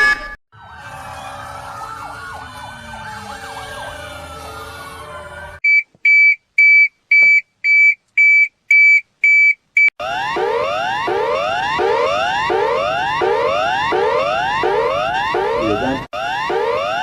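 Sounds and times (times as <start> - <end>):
warning sirens wailing: 0.0 - 5.6, 10.0 - 17.0
high electronic alert beeps: 15.4 - 16.1.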